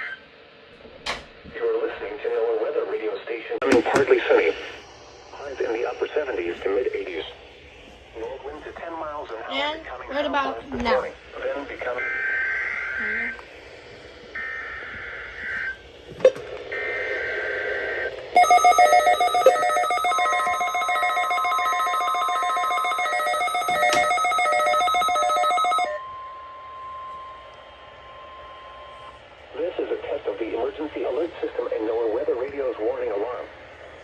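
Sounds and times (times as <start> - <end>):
steady warning tone: 4.2 - 33.0
pulsing electronic alarm: 11.8 - 13.4, 14.3 - 29.2.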